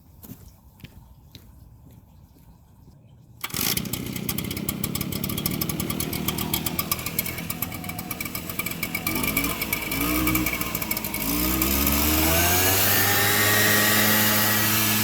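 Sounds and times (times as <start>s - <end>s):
leaf blower engine running: 3.4s - 15.0s.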